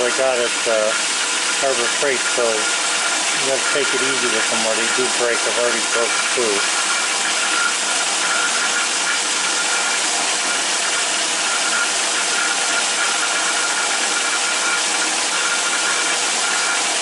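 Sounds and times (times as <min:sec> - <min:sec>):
lathe whirring while drilling: 0:00.0 - 0:17.0.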